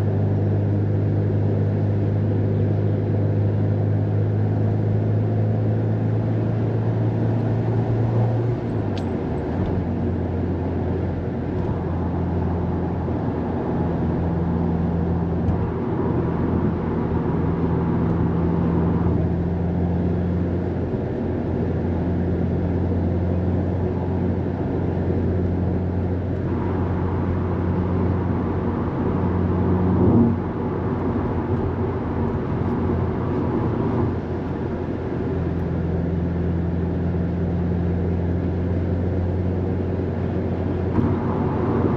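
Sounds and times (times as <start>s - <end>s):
car engine drone from inside: 0.0s - 41.9s.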